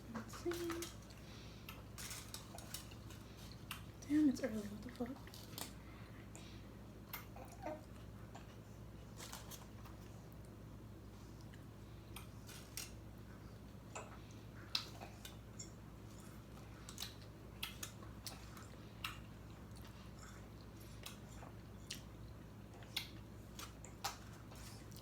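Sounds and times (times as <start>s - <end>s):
faint low hum: 0.0s - 25.0s
chewing with crunches: 0.4s - 4.0s, 11.2s - 25.0s.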